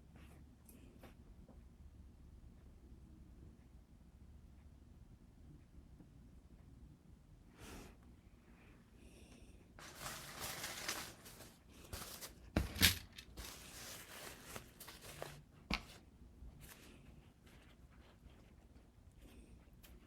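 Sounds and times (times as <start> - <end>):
rustling and tearing: 9.8 - 15.4.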